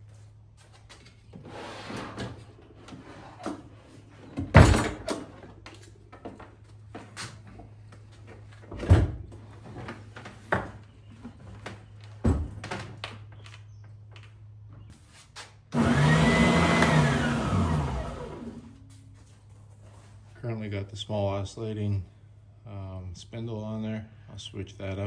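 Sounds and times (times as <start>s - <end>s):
scraping shuffle: 14.9s - 15.6s, 18.8s - 20.5s.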